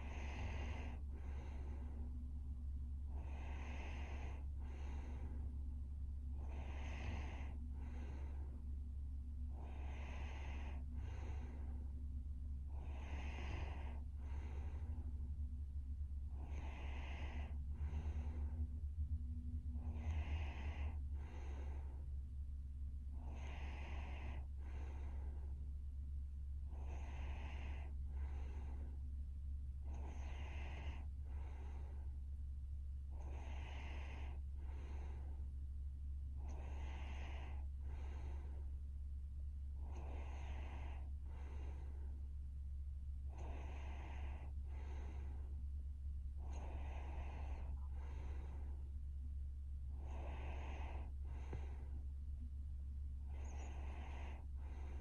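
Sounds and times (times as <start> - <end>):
woman snoring and breathing: 0.0 - 2.1, 3.0 - 5.5, 6.3 - 8.6, 9.5 - 12.0, 12.6 - 15.3, 16.2 - 18.7, 19.6 - 22.1, 23.1 - 25.6, 26.6 - 29.0, 29.8 - 32.2, 33.1 - 35.5, 36.3 - 38.7, 39.7 - 42.2, 43.2 - 45.6, 46.3 - 48.9, 49.9 - 52.1, 53.2 - 55.0
steady low hum: 0.0 - 55.0.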